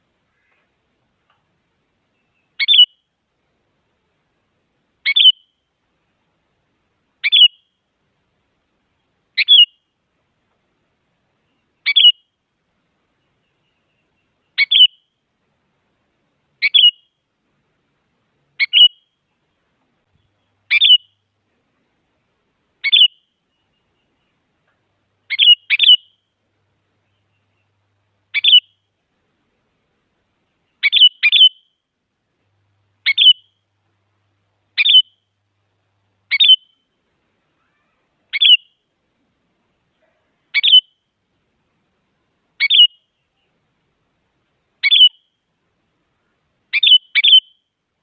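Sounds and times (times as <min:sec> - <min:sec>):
bird giving sharp calls: 0:02.6 - 0:03.0, 0:05.0 - 0:05.5, 0:07.2 - 0:07.7, 0:09.4 - 0:09.8, 0:11.8 - 0:12.2, 0:14.6 - 0:15.0, 0:16.6 - 0:17.1, 0:18.6 - 0:19.1, 0:20.7 - 0:21.2, 0:22.8 - 0:23.2, 0:25.3 - 0:26.2, 0:28.3 - 0:28.8, 0:30.8 - 0:31.7, 0:33.0 - 0:33.6, 0:34.8 - 0:35.2, 0:36.3 - 0:36.8, 0:37.6 - 0:38.8, 0:40.6 - 0:41.0, 0:42.6 - 0:43.1, 0:44.8 - 0:45.3, 0:46.7 - 0:47.6.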